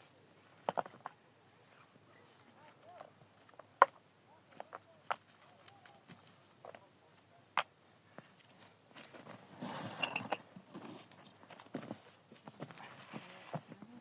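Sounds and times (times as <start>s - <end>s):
rustling noise: 8.1s - 14.0s.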